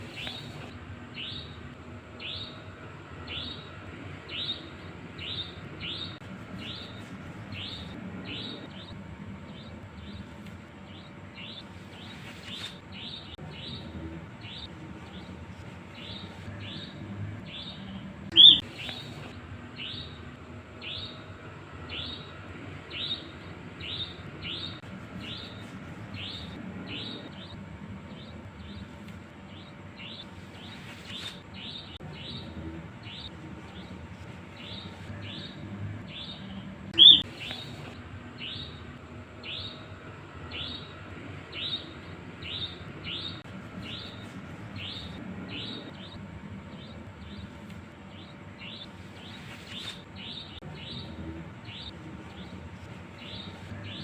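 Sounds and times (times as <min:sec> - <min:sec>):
nightjar calling: 0:02.2 - 0:10.2, 0:16.0 - 0:20.2, 0:34.6 - 0:38.8, 0:39.4 - 0:39.9, 0:40.5 - 0:52.6.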